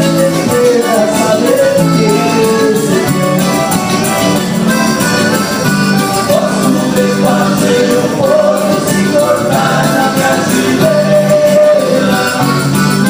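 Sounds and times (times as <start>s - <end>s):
accordion: 0.0s - 13.0s
band playing with singing: 0.0s - 13.0s
percussion: 0.0s - 13.0s.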